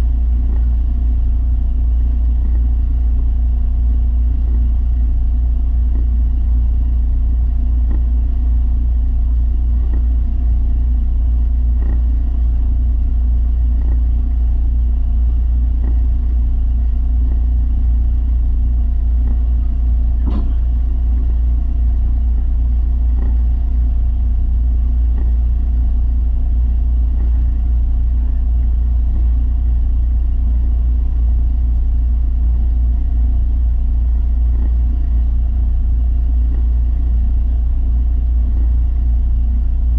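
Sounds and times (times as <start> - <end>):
faint ticks: 9.7 - 10.2, 13.7 - 14.1, 27.1 - 27.6.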